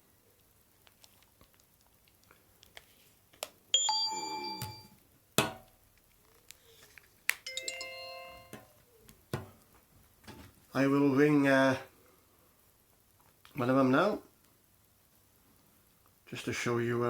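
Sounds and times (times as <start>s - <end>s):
mobile phone chimes: 3.8s - 5.0s, 7.5s - 8.8s.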